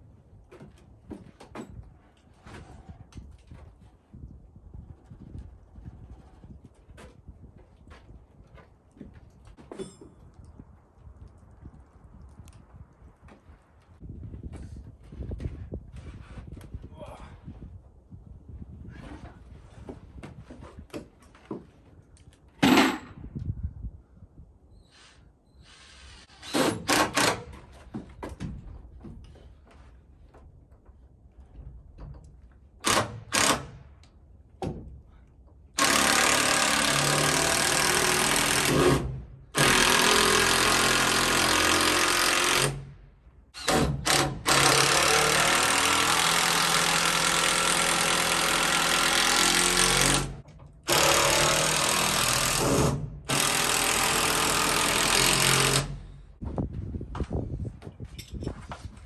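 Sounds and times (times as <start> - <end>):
power tool running: 35.8 - 39.0, 39.6 - 42.9, 43.6 - 56.1.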